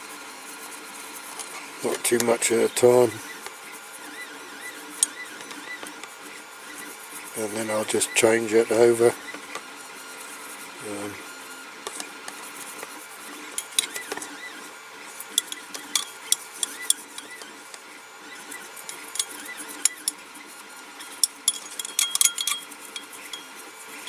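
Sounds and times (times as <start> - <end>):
brush scrubbing: 0.2 - 24.0
metal clinking in a container: 21.2 - 23.6.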